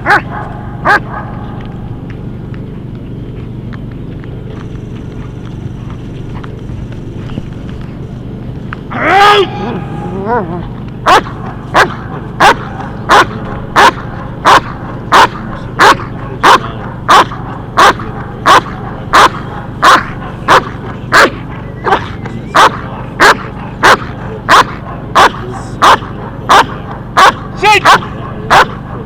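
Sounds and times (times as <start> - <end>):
dog barking: 0.0 - 1.4, 9.4 - 29.0.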